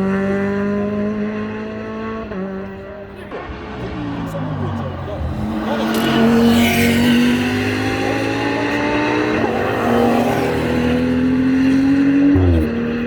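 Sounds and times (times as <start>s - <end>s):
race car engine accelerating: 0.0s - 13.0s.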